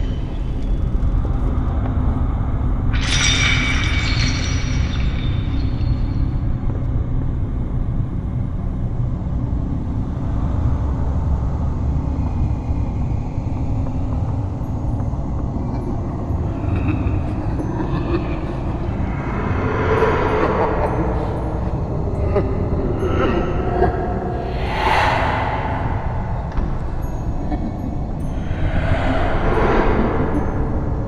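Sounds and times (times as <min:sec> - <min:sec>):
low horror ambience rumble: 0:00.0 - 0:31.0
higher noisy swell: 0:24.4 - 0:27.1.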